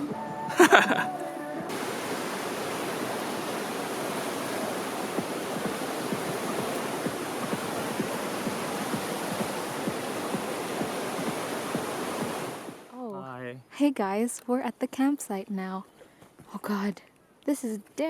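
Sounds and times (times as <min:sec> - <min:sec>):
stream rushing: 0:00.5 - 0:12.9.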